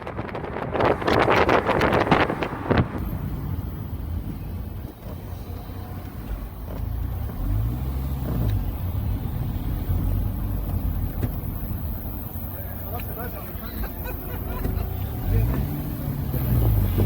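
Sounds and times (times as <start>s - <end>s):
vehicle engine rumble: 0.0s - 17.0s.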